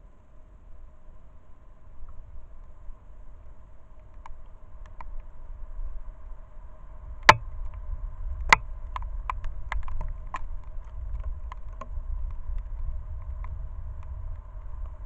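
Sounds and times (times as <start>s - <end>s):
small clicks and cracks: 4.0s - 5.3s, 8.5s - 15.0s.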